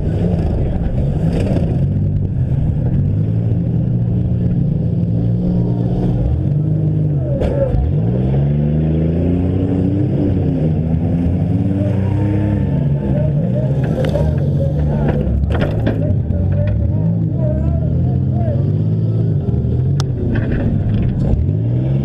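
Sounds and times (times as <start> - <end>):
engines revving: 0.0 - 22.0.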